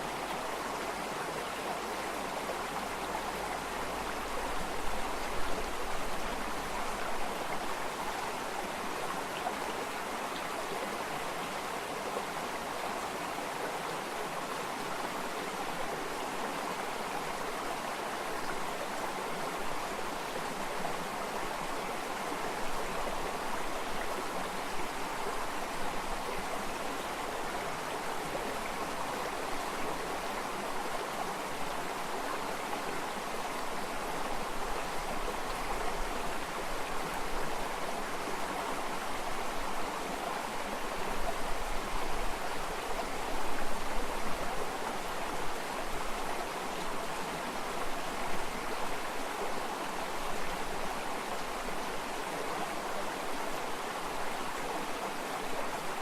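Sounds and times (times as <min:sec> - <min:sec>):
stream flowing: 0:00.0 - 0:56.0.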